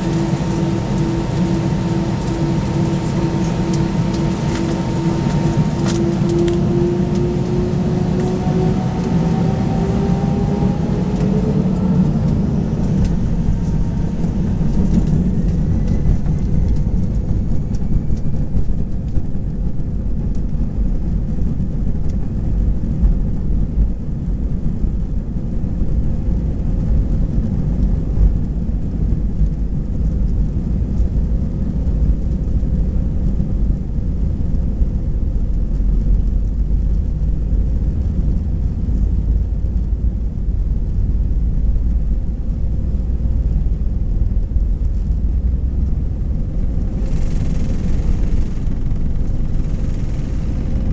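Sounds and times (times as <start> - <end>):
rising whining tones: 0.0 - 18.7
jet engines roaring: 0.0 - 36.2, 43.8 - 50.9.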